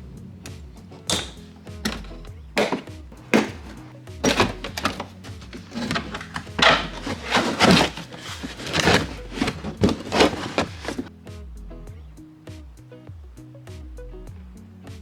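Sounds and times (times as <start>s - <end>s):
tools knocking and scraping car parts: 0.0s - 11.1s
background music: 0.0s - 15.0s.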